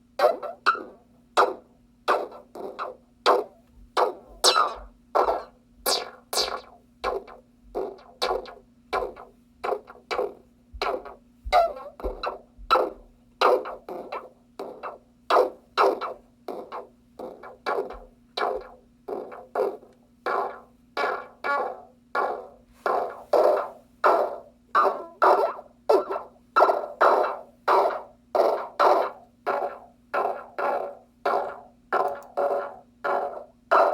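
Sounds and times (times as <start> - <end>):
synthesizer blips and hits: 4.3 - 7.3.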